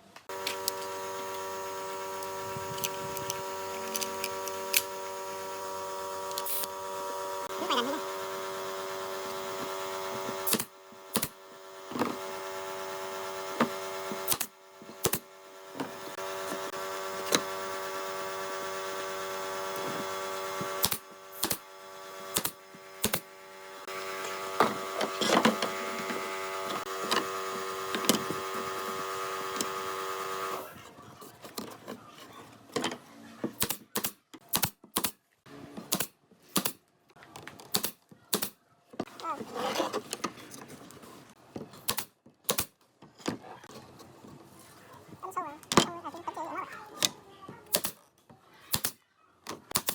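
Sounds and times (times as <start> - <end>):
small electric motor whining: 0.3 - 30.9.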